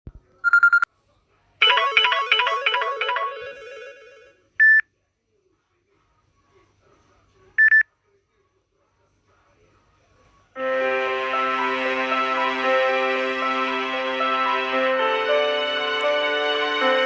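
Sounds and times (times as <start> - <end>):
repeating ringtone melody: 1.6 - 4.4.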